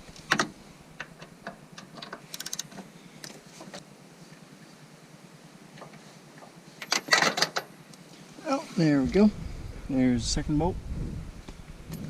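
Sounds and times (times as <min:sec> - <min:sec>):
hand ratchet clicking: 0:02.3 - 0:02.7.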